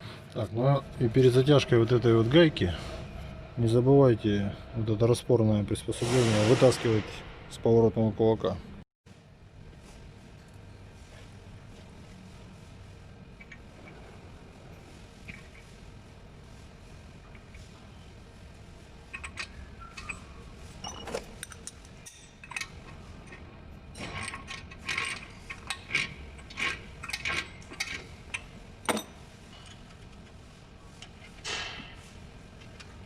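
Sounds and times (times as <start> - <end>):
metal tools clinking and clattering: 19.1 - 23.4, 24.0 - 29.9.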